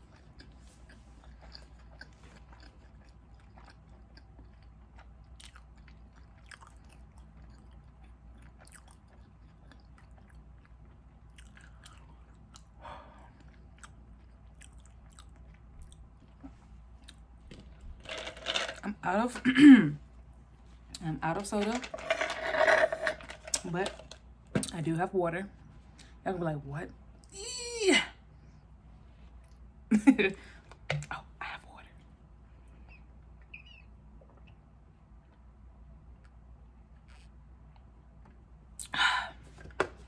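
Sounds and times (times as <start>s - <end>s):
chewing food: 0.0s - 17.9s.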